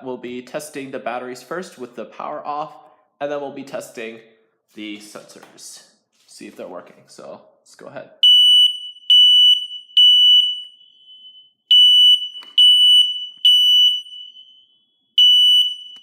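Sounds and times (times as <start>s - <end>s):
smoke alarm beeping: 8.2s - 16.0s.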